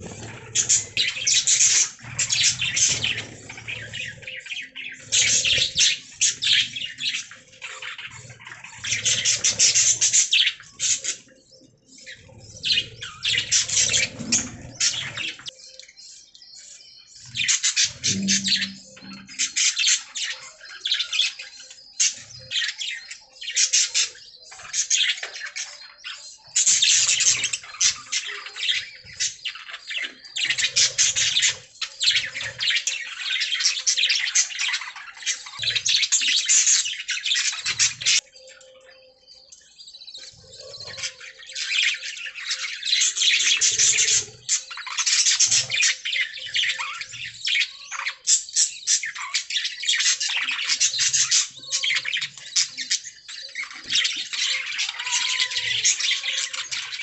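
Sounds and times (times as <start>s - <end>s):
budgerigars chattering and chirping: 0.0s - 57.0s.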